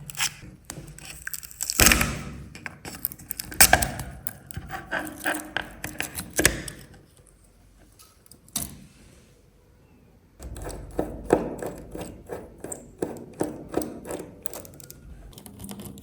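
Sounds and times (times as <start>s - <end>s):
tools clicking and tapping on bench: 2.5s - 7.0s, 10.4s - 16.0s.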